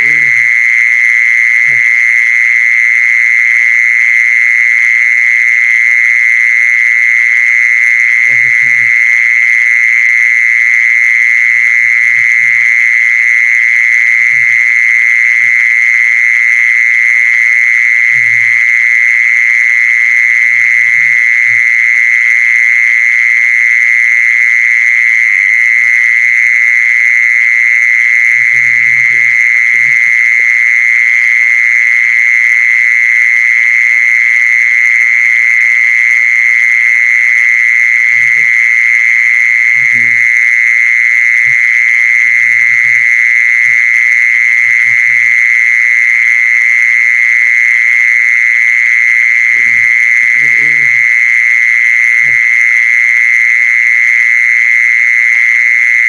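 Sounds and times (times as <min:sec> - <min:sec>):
high-pitched buzzing trill: 0:00.0 - 0:02.1, 0:08.2 - 0:09.6, 0:10.6 - 0:22.8, 0:27.9 - 0:30.6, 0:37.8 - 0:53.2.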